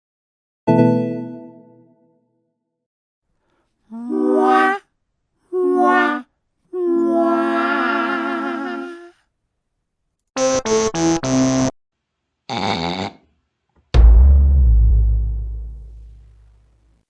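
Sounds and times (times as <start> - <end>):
electronic jingle: 0.7 - 1.9.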